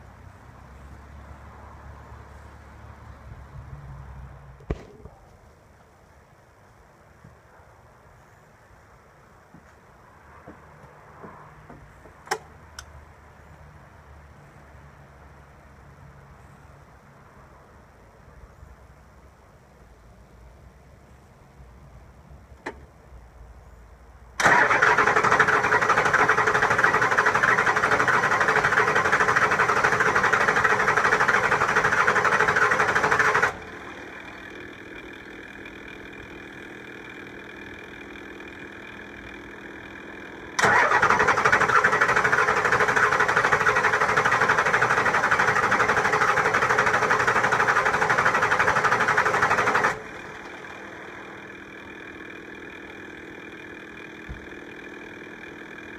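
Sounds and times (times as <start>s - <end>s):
diesel engine cranking on starter: 24.4s - 55.9s.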